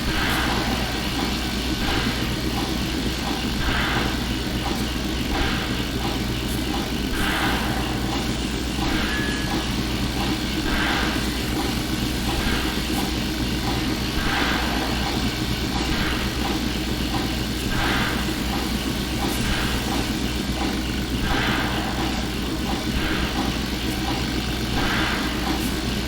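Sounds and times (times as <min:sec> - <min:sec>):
hiss: 0:00.0 - 0:08.3, 0:08.9 - 0:26.0.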